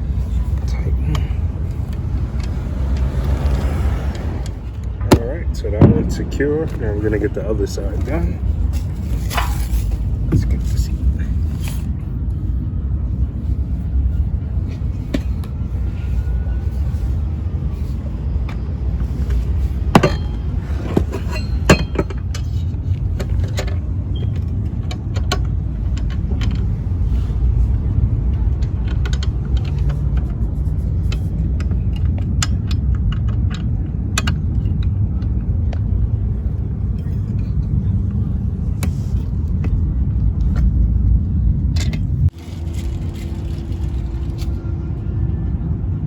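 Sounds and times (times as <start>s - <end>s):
steady low rumble: 0.0s - 46.0s.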